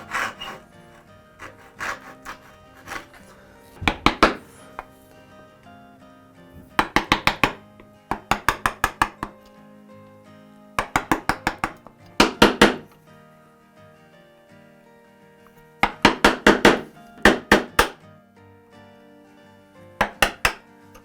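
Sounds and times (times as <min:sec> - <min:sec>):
hammer tapping on wood: 0:00.0 - 0:05.0, 0:06.6 - 0:09.5, 0:10.8 - 0:13.0, 0:15.8 - 0:18.0, 0:20.0 - 0:21.0
background music: 0:00.0 - 0:21.0.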